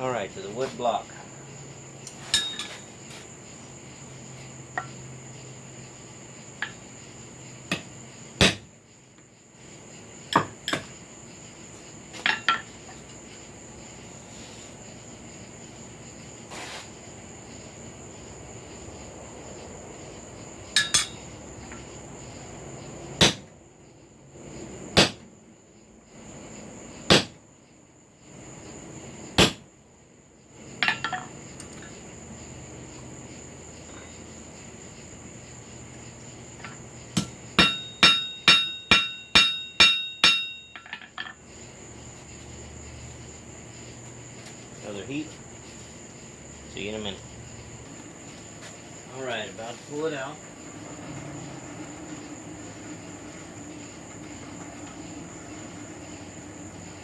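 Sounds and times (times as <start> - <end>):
hammer striking steel punch: 7.7 - 8.7, 23.2 - 23.5, 27.1 - 27.4, 29.4 - 29.6, 37.2 - 40.8.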